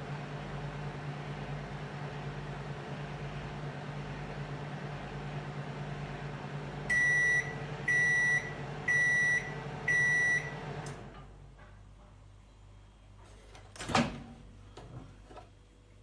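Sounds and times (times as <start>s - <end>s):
microwave humming: 0.0s - 11.6s
high microwave beeps: 6.9s - 10.7s.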